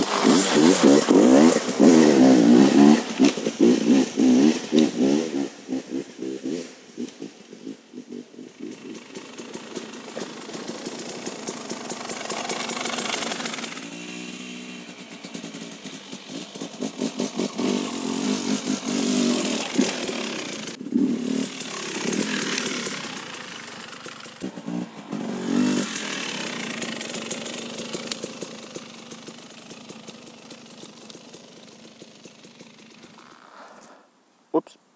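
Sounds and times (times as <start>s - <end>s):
two-stroke motorcycle engine revving: 0.0s - 33.6s.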